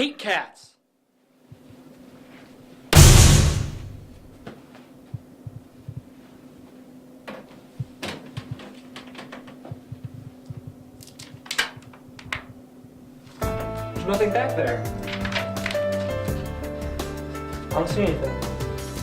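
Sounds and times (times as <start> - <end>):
steady low hum: 3.0 - 4.4.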